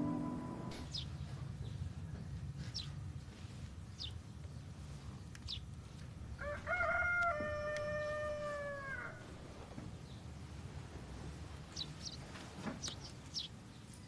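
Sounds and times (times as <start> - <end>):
small bird chirping: 0.0 - 1.3, 3.9 - 4.6, 5.2 - 5.7, 11.7 - 14.0
faint low background noise: 0.0 - 14.0.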